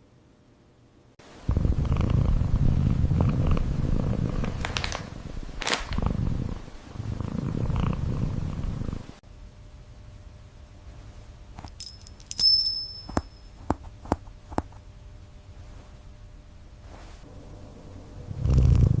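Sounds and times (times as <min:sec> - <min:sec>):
kitten purring: 0:01.5 - 0:04.6, 0:06.0 - 0:09.2, 0:17.4 - 0:19.0.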